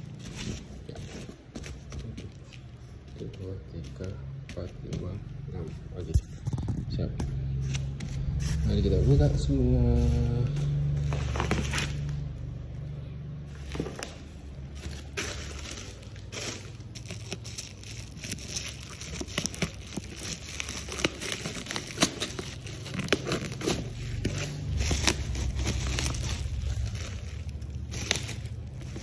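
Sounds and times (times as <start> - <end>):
plastic and cardboard packaging crinkling: 0.0 - 4.9, 7.6 - 12.5, 13.5 - 29.0.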